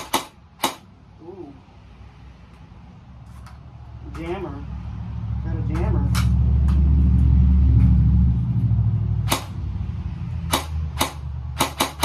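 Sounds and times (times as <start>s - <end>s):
airsoft rifle shots: 0.0s - 0.9s, 9.2s - 9.6s, 10.5s - 12.0s
low steady rumble: 0.3s - 12.0s.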